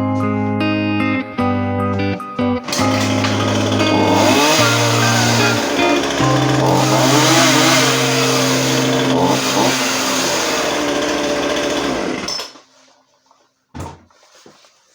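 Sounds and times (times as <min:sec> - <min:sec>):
chainsaw revving: 0:02.6 - 0:12.7.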